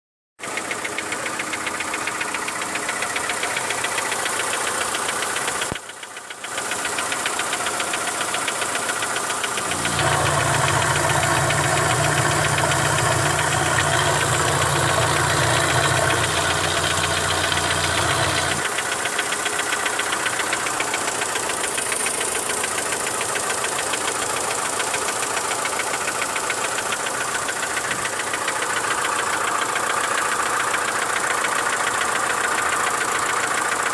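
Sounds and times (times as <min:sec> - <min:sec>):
car engine idling with ticking knock: 0:00.4 - 0:33.9
deep steady hum: 0:09.6 - 0:18.6.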